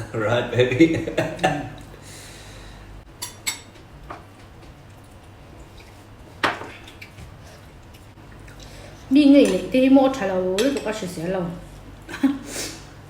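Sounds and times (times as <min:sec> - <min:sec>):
cutlery clinking against plates: 0:03.2 - 0:03.8.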